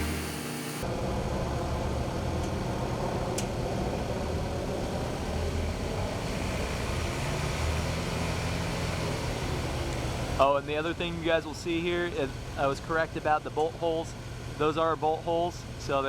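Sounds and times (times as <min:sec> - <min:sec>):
low engine hum: 0:00.8 - 0:10.4.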